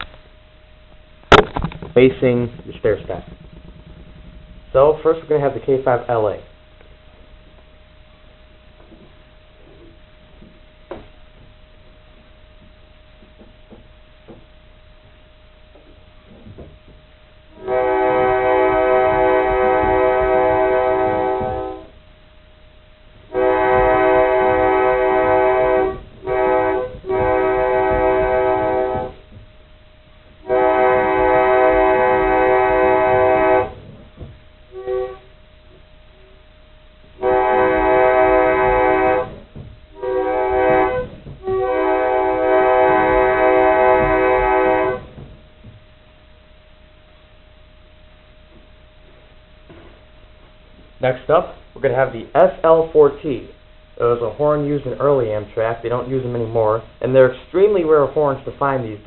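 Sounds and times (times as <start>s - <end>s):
pump organ chord blasts: 0.0s - 50.4s
faint steady tone: 6.4s - 52.4s.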